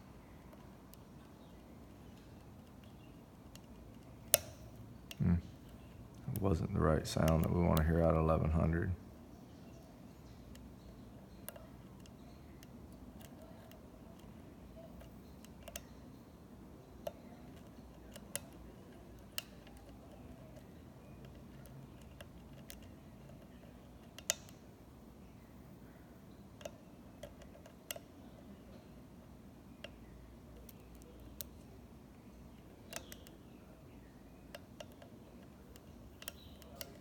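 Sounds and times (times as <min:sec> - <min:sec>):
lock pick clicking in padlock: 0:32.9 - 0:33.4.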